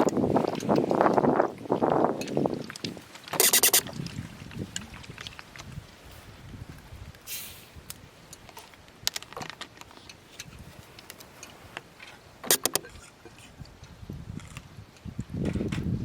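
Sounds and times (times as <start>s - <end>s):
objects clicking and clacking: 2.2s - 4.1s, 8.3s - 13.2s.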